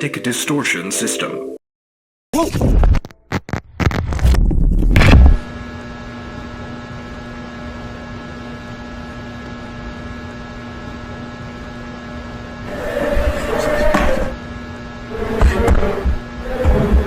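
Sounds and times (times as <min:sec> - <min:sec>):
lightsaber electrical hum: 0:04.6 - 0:17.0.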